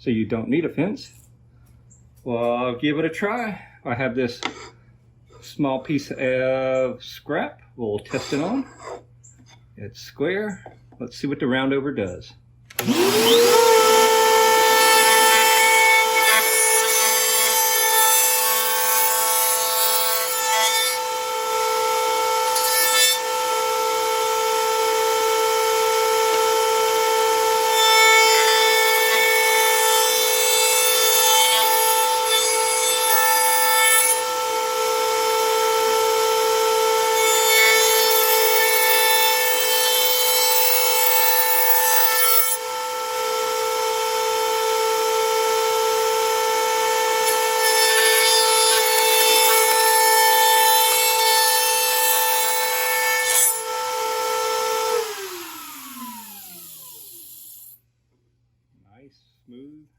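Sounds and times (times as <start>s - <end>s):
vacuum running: 12.7s - 15.1s, 53.8s - 57.2s
router high whine: 12.7s - 20.3s, 34.1s - 57.8s
router bit cutting wood: 12.7s - 57.7s.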